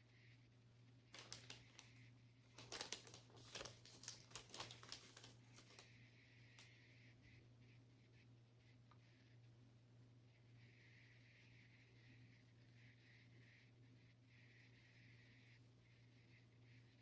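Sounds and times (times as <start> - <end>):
low steady hum: 0.0 - 17.0
small objects clicking and rustling: 1.2 - 1.9, 2.6 - 5.8.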